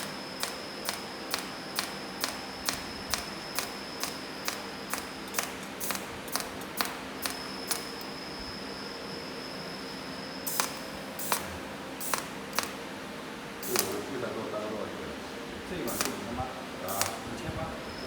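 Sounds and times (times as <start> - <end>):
welding machine ticking: 0.0 - 8.1, 10.5 - 12.8, 13.6 - 14.0, 15.9 - 16.3, 16.9 - 17.2
steady high whine: 0.0 - 18.0.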